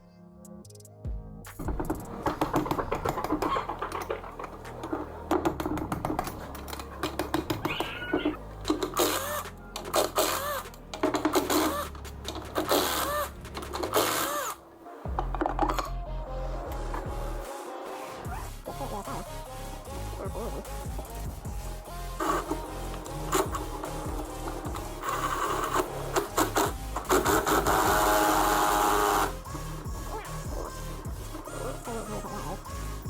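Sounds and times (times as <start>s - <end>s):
background music with steady beat: 0.0s - 33.0s.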